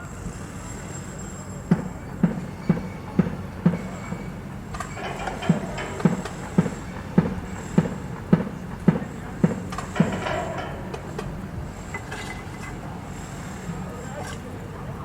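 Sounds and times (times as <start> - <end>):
light clatter: 0.8 - 15.0
heavy thuds: 1.7 - 12.3.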